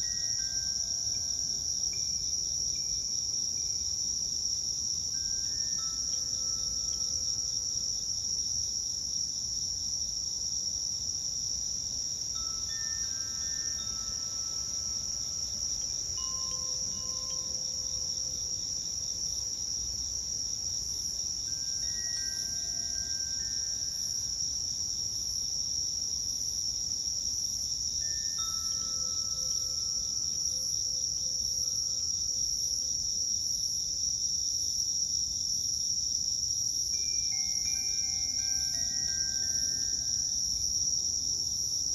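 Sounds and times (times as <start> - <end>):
crickets chirping: 0.0 - 41.9.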